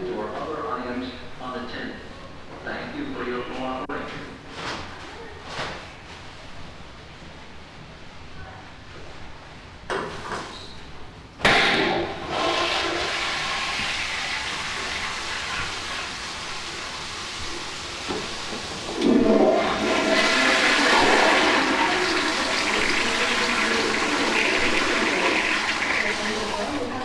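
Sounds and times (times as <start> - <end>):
toilet flushing: 11.4 - 27.0.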